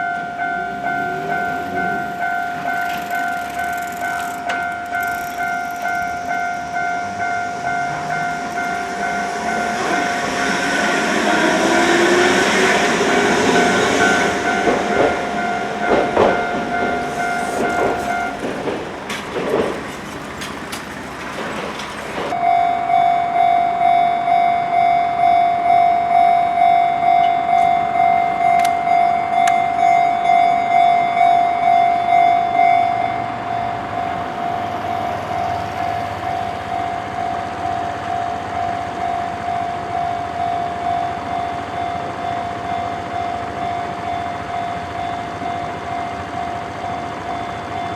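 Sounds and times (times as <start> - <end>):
electronic crossing bell: 0.0 - 18.9
tram wheels clattering: 0.0 - 22.4
level-crossing warning bell: 0.0 - 47.9.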